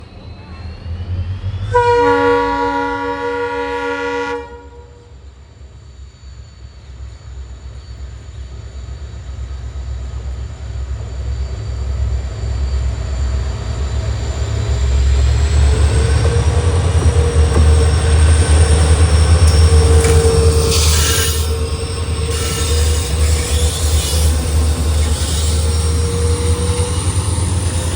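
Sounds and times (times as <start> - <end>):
locomotive horn: 1.7 - 5.1, 19.4 - 21.6
rising whine: 12.4 - 27.9
diesel engines rumbling: 13.1 - 27.9.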